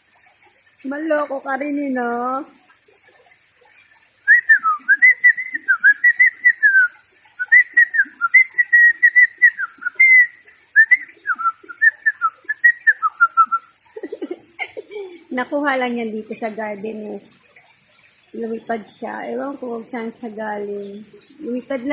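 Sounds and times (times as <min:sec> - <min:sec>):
parrot whistling: 0:04.3 - 0:13.7.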